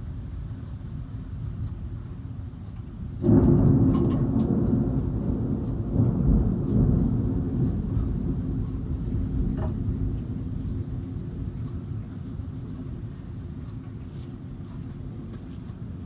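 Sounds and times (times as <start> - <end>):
steady storm rumble: 0.0 - 14.6
loud thunder rumble: 3.2 - 11.6.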